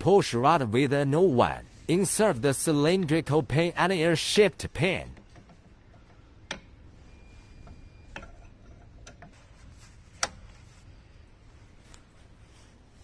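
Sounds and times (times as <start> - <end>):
metal clicks and taps: 5.1 - 7.0, 7.6 - 9.4, 10.1 - 10.6.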